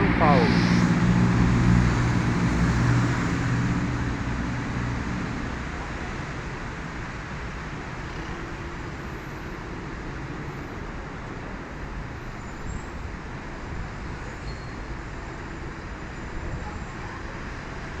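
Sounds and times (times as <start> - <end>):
passing vehicles: 0.0 - 12.2
tyres on wet road: 0.0 - 14.3.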